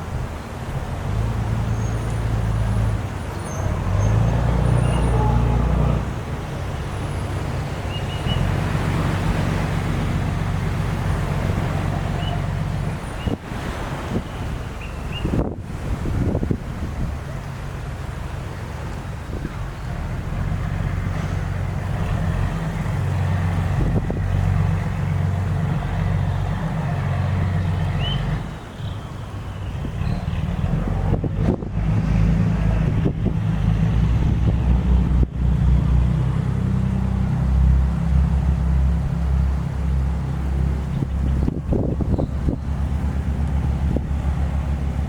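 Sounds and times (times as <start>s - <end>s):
boat engine droning: 0.0s - 45.0s
wind buffeting microphone: 5.4s - 17.8s, 19.1s - 28.5s, 29.7s - 45.0s.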